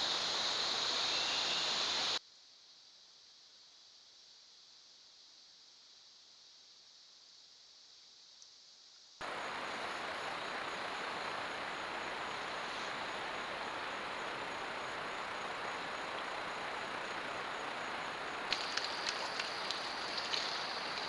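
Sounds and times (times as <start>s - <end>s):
faint hiss: 0.0s - 21.0s
loud rushing outdoor ambience: 9.2s - 21.0s.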